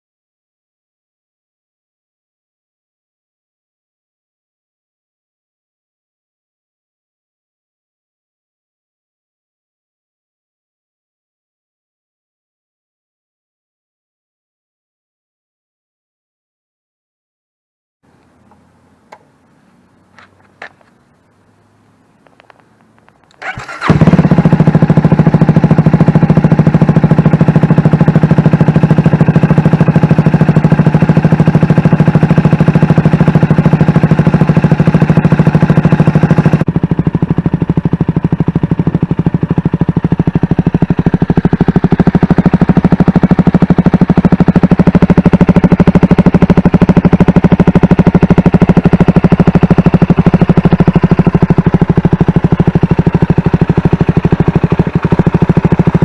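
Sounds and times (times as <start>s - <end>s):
motorcycle engine idling: 18.1s - 56.0s.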